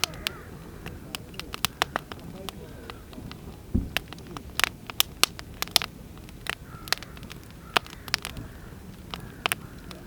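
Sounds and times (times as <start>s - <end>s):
wood fire crackling: 0.0s - 10.0s
low thump: 3.7s - 4.0s.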